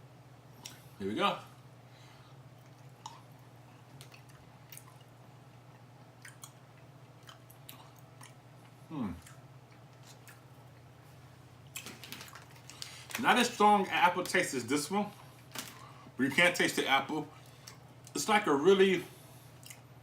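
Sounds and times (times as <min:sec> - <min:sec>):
person chewing candy: 0:02.6 - 0:10.9
person humming mm: 0:08.9 - 0:09.3.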